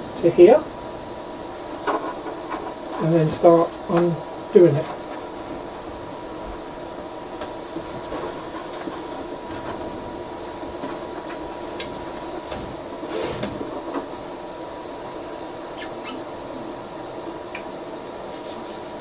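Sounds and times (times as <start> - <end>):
printer cooling fans humming: 0.0 - 19.0
rustle and scrape: 18.3 - 19.0.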